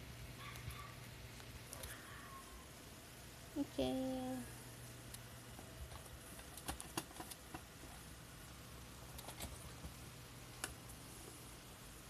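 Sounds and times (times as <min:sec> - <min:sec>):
faint steady hum: 0:00.0 - 0:12.0
plastic toys clicking and tapping: 0:06.4 - 0:07.7.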